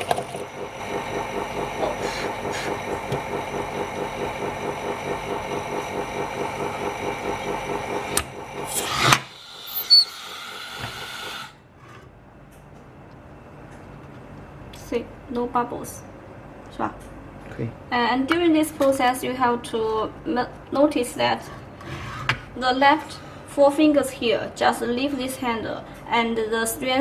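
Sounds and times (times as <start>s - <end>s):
small machine motor whining: 0.1s - 12.0s.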